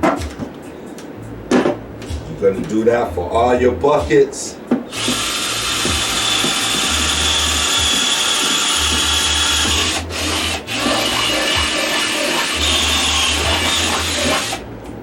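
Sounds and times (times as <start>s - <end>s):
power drill grinding through bucket: 4.9s - 14.6s.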